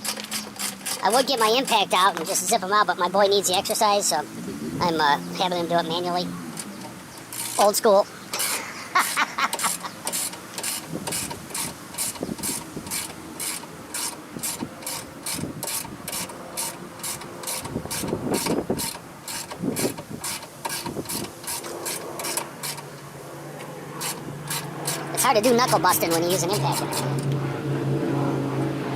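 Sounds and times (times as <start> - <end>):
hand ratchet clicking: 0.0 - 2.4, 6.5 - 7.7, 8.3 - 22.9, 24.0 - 25.8, 26.5 - 27.4.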